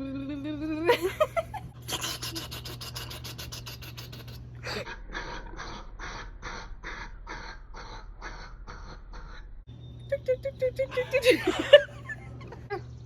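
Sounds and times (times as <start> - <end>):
person making mouth sound effect: 1.9 - 4.9.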